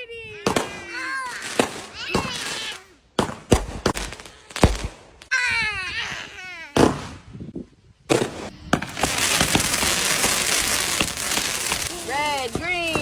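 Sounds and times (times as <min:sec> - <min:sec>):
firework bangs: 0:00.4 - 0:05.3, 0:06.8 - 0:07.4, 0:08.1 - 0:13.0
firework crackling: 0:00.4 - 0:05.3, 0:08.1 - 0:13.0.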